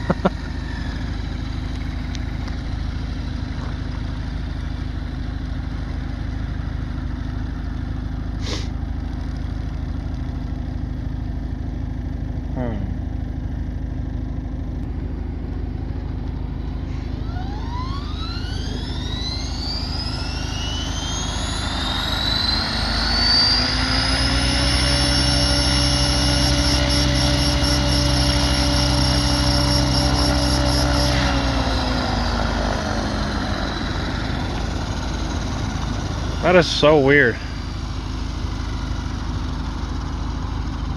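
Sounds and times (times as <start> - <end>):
rc helicopter motor and rotor whine: 16.7 - 40.9.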